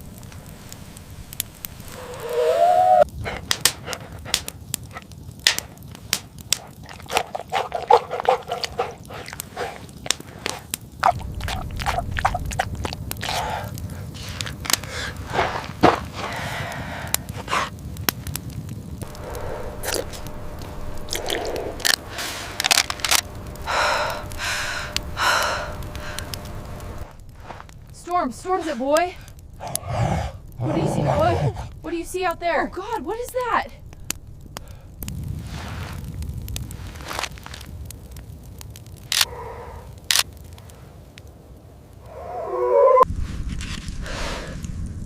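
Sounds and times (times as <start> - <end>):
crunching and scraping with clicks: 3.1 - 30.0, 33.3 - 39.3, 40.0 - 41.3
low steady rumble: 6.8 - 40.0.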